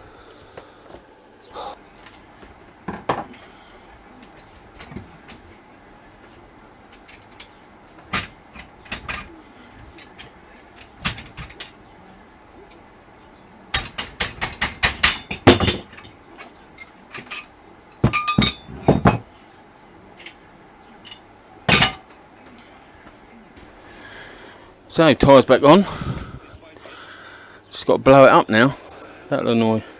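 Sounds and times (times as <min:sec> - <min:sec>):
metal tool clanking on wheel rim: 0:16.8 - 0:19.3, 0:21.0 - 0:22.1.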